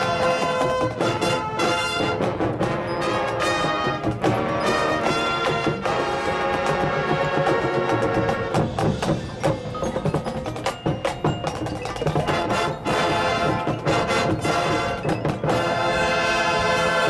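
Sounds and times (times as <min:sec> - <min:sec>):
mallet percussion and bells: 0:00.0 - 0:17.0
wood block and drum strikes: 0:00.0 - 0:17.0.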